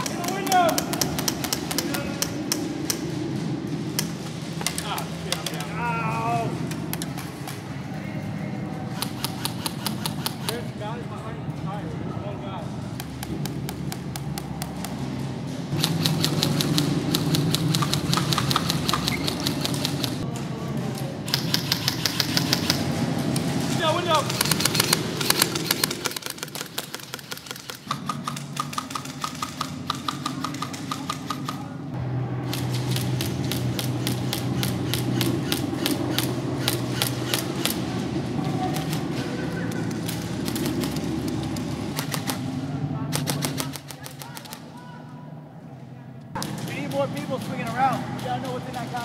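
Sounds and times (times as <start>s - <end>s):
steady low hum: 0.0s - 49.0s
airsoft rifle firing: 8.9s - 10.6s, 15.7s - 20.2s, 21.3s - 23.0s, 24.0s - 31.7s, 32.4s - 37.9s, 40.1s - 41.1s, 41.9s - 42.5s, 43.1s - 44.7s.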